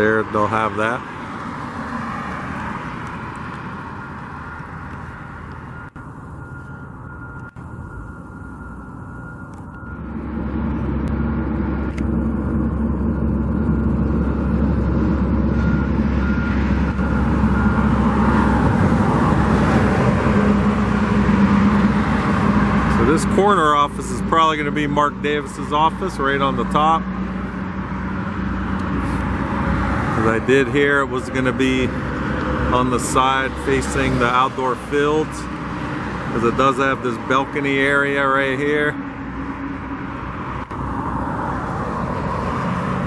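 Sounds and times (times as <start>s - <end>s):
heavy vehicle engine running: 0.0s - 43.0s
steady high tone: 3.6s - 35.6s
short repeated beeps: 5.6s - 10.2s.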